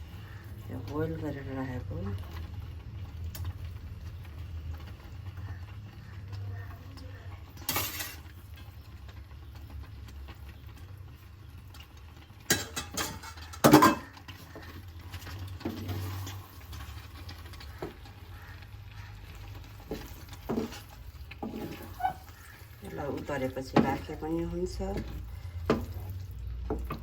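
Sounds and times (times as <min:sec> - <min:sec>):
metal utensil scraping a pan: 0:07.5 - 0:08.4, 0:12.5 - 0:18.2, 0:19.3 - 0:27.0.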